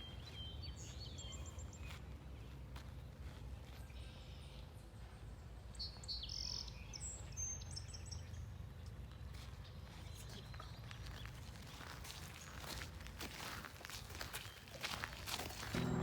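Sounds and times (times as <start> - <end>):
birds chirping: 15.6 - 16.0
steady low rumble: 15.7 - 16.0.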